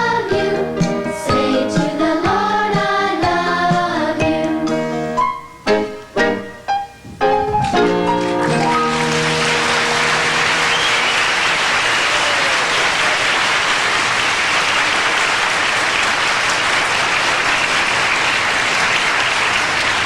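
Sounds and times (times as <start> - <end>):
audience applauding: 7.8 - 20.0
cheering: 8.5 - 20.0.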